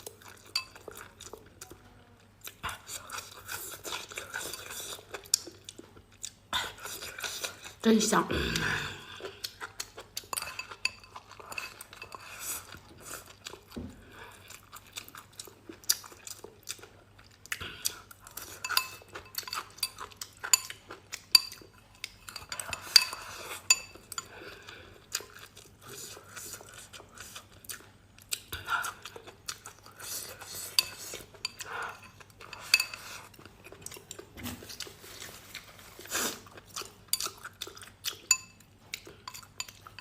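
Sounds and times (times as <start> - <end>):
utensils clinking against dish: 22.2 - 24.3, 30.5 - 34.8.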